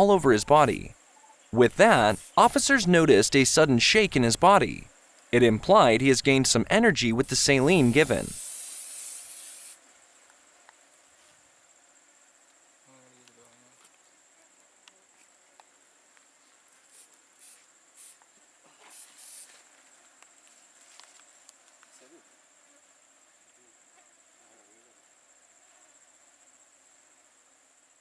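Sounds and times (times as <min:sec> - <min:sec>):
high-pitched insect drone: 0:05.5 - 0:09.8
short hisses: 0:07.5 - 0:09.8, 0:18.8 - 0:19.6.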